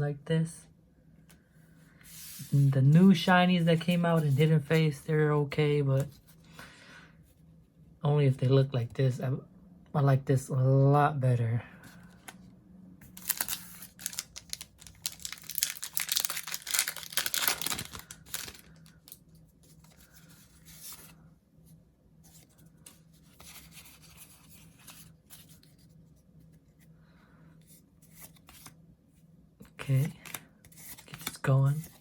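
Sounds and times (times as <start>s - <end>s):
foil wrapper tearing and crinkling: 13.2s - 19.1s.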